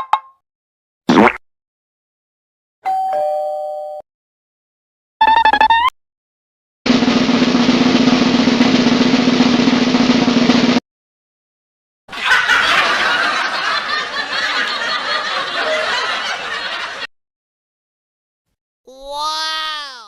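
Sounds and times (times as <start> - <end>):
snare drum roll: 6.9 - 10.8
canned laugh track: 12.1 - 17.1.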